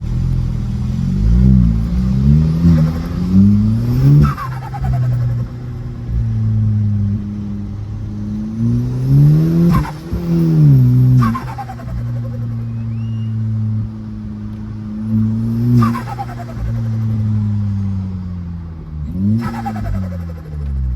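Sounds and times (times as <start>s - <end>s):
car engine revving: 0.0s - 20.9s
turbo whistle and flutter: 3.6s - 5.7s, 9.6s - 13.6s, 15.5s - 17.4s, 19.4s - 20.8s.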